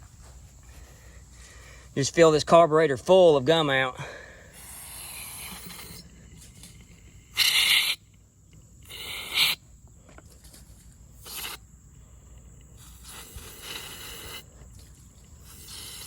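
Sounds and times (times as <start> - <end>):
aerosol can spraying hiss: 4.6 - 6.0, 7.4 - 8.0, 8.9 - 9.6, 11.2 - 11.6, 12.8 - 14.5, 15.4 - 16.0.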